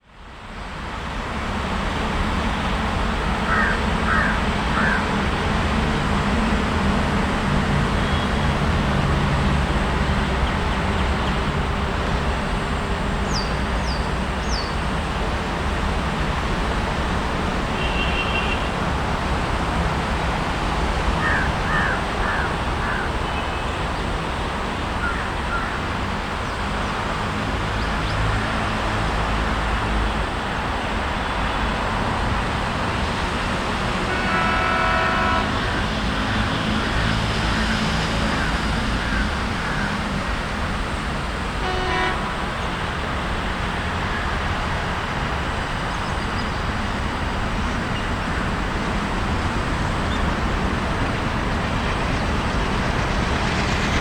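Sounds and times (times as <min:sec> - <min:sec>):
rumble of engines and traffic: 0:00.0 - 0:54.0
birds calling: 0:03.4 - 0:05.2, 0:21.2 - 0:23.8, 0:25.0 - 0:26.6, 0:35.2 - 0:40.2.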